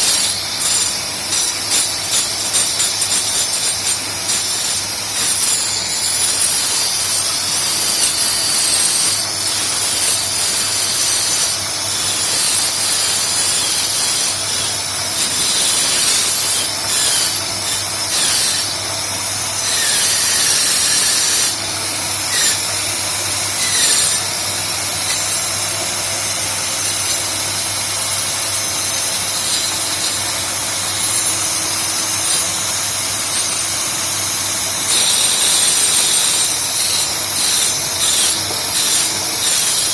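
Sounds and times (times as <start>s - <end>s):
wood copying machine cutting wood: 0.0s - 39.9s.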